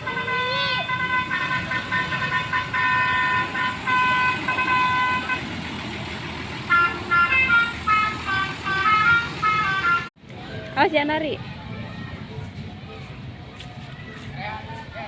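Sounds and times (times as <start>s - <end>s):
musical bus horn: 0.0s - 10.1s
bus engine: 0.0s - 15.0s.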